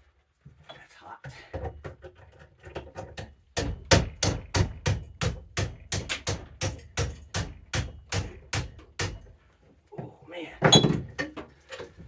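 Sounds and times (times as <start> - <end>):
hammer striking metal: 3.6 - 9.2.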